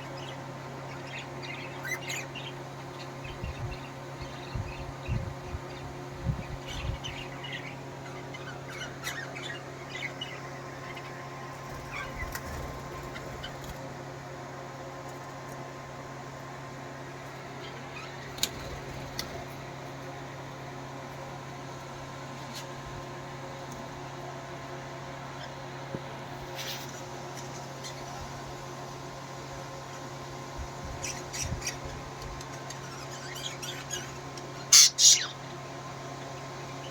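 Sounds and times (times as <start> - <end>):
steady low hum: 0.0 - 36.9
parrots chirping and squawking: 6.4 - 13.8, 31.0 - 32.0, 32.6 - 35.4.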